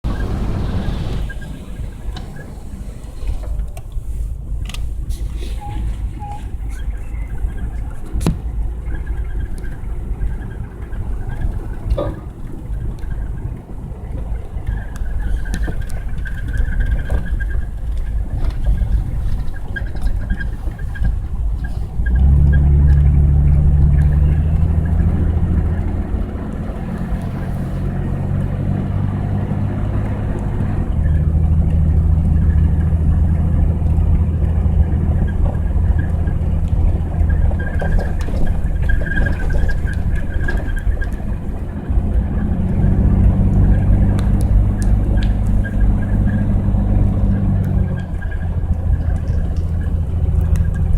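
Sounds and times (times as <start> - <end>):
car engine rumble: 0.0 - 50.9.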